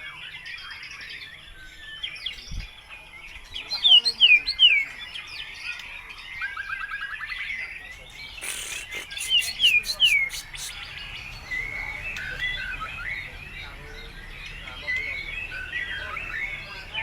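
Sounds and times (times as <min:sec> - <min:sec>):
songbird singing whistles: 0:03.4 - 0:13.6.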